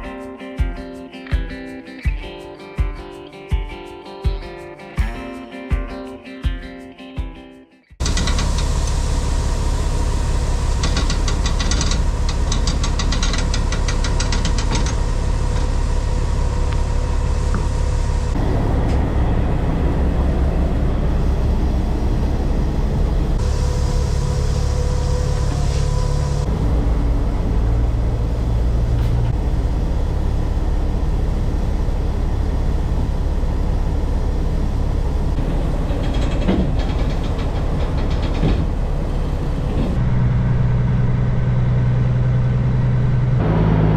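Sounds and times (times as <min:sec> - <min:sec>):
heavy vehicle engine droning: 0:08.0 - 0:43.9
fast clicking rattle: 0:10.8 - 0:15.0.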